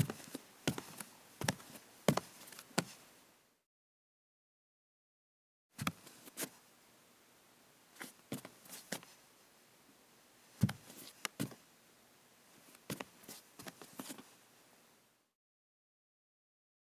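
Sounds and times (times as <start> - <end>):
bare footsteps on wooden floor: 0.0 - 2.9, 10.6 - 11.6.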